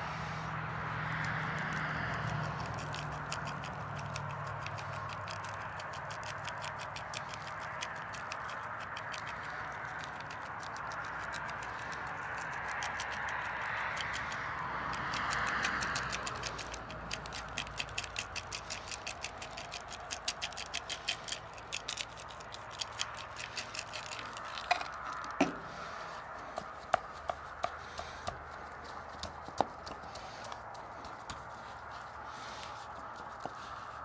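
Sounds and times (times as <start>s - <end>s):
sharp clicks and taps: 14.0s - 33.6s.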